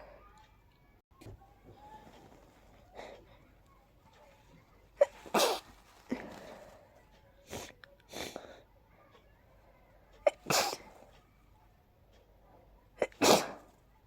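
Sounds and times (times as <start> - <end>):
person sneezing: 5.0 - 6.3, 10.3 - 10.9, 13.0 - 13.7
breathy sounds: 5.1 - 8.8.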